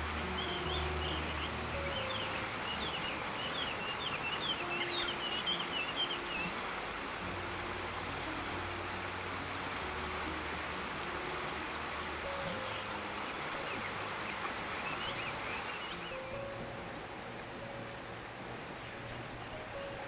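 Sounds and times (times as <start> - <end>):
faint low sustained notes: 0.0 - 20.0
river flowing: 0.0 - 20.0
bird chirping: 0.2 - 6.6, 11.2 - 17.8, 18.4 - 20.0.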